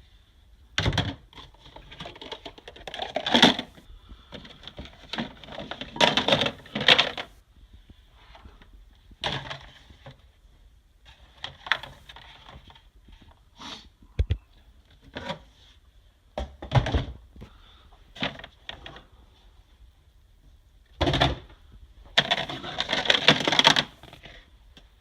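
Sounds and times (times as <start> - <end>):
plastic containers clattering: 0.8 - 7.4, 8.6 - 10.2, 11.1 - 12.9, 14.9 - 15.6, 16.4 - 17.2, 18.1 - 19.1, 21.0 - 24.4.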